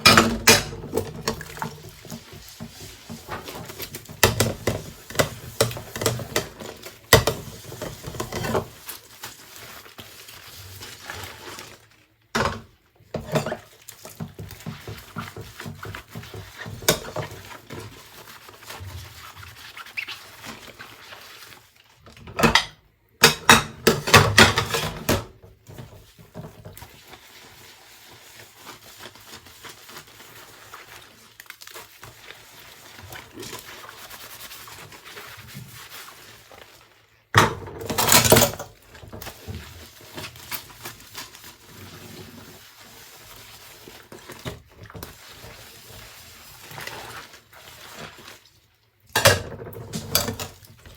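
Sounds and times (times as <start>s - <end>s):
dishes knocking and clinking: 0.0s - 1.6s, 22.3s - 25.3s, 49.2s - 50.5s.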